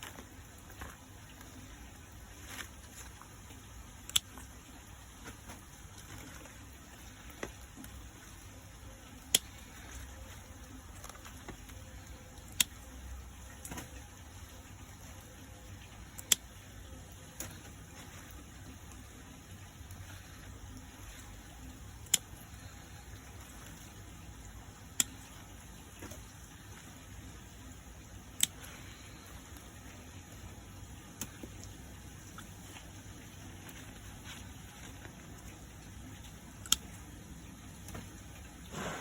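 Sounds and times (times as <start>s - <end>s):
stems snapping: 4.0s - 4.5s, 9.2s - 10.2s, 10.9s - 12.8s, 16.1s - 16.5s, 24.9s - 25.3s, 36.6s - 37.0s.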